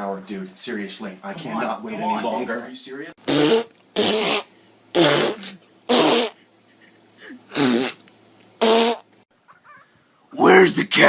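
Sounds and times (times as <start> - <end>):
farting sounds: 3.2 - 6.4, 7.5 - 8.0, 8.6 - 9.1.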